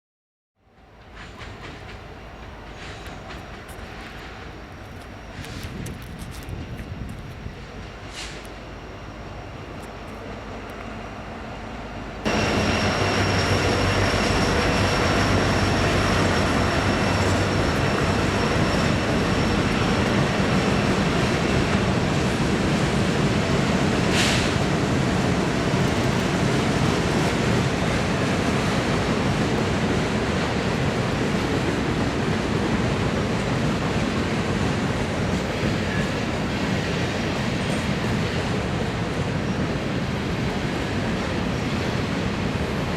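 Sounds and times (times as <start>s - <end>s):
freight train rolling past: 0.7s - 42.9s
high wheel whine: 12.0s - 22.7s.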